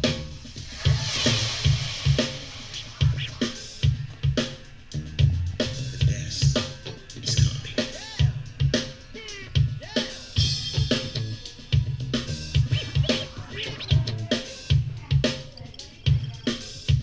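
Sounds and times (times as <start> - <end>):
music with drum beat and bass: 0.0 - 17.0.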